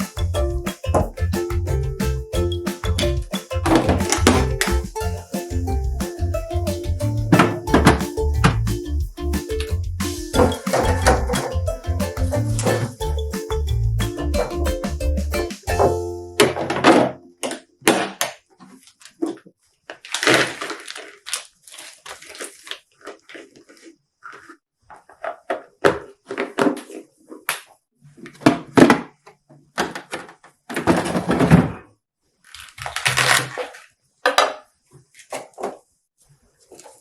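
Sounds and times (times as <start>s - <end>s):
dishes and containers clattering: 2.4s - 5.5s, 7.3s - 8.6s, 10.3s - 13.5s
rustling: 18.6s - 27.5s, 35.0s - 37.0s.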